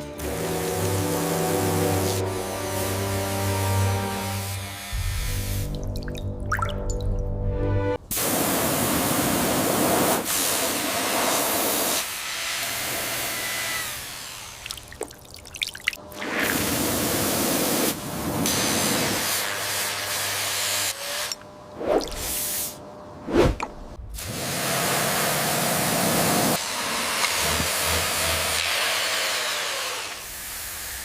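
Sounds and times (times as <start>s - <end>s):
hissing spray bursts: 8.1s - 12.2s, 16.4s - 20.4s, 22.1s - 22.8s, 24.2s - 27.2s.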